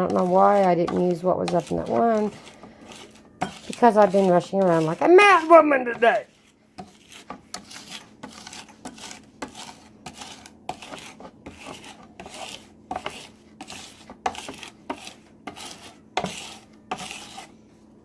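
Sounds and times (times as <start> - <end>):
knife scraping on cutting board: 0.0 - 17.6.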